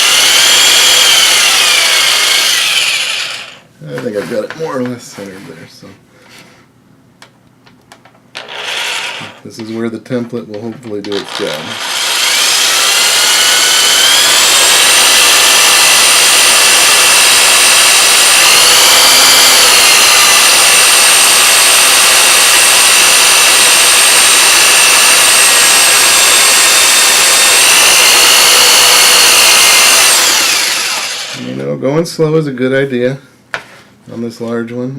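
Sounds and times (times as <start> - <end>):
electric drill motor whine: 0.0 - 3.6, 8.4 - 9.4, 11.2 - 31.5.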